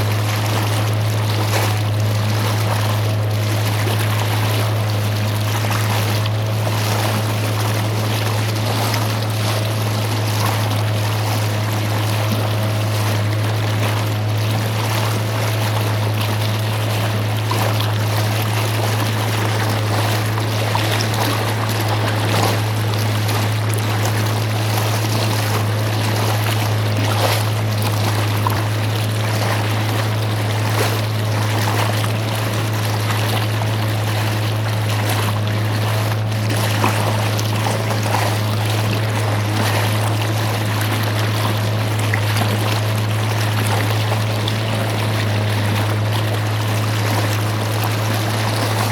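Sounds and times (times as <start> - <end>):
boat engine humming: 0.0 - 48.9
water splashing along hull: 0.0 - 48.9.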